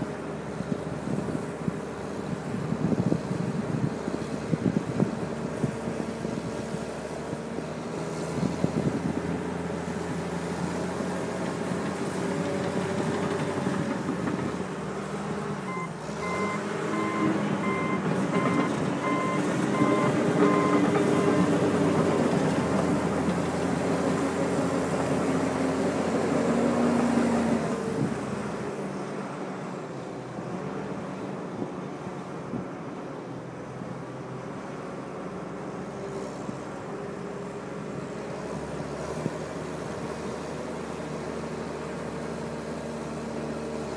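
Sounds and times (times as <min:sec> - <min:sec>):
bulldozer diesel engine: 0:00.0 - 0:43.9
backup alarm beeping: 0:15.7 - 0:20.8.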